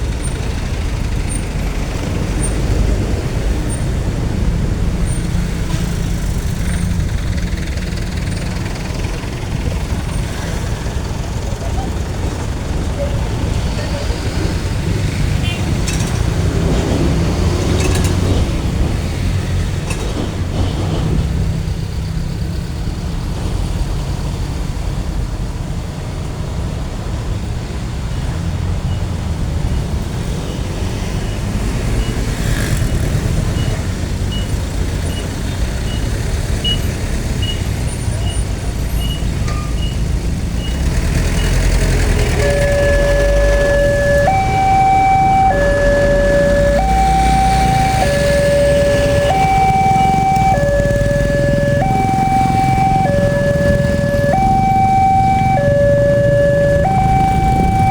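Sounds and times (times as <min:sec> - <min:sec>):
road traffic rumble: 0:00.0 - 0:57.9
two-tone emergency siren: 0:42.3 - 0:57.9.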